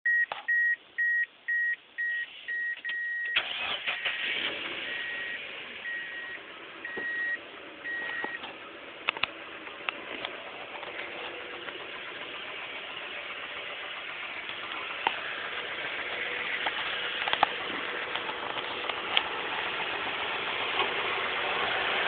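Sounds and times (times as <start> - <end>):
car warning chime beeping: 0.1 - 8.4
car engine starting and running: 0.1 - 22.0.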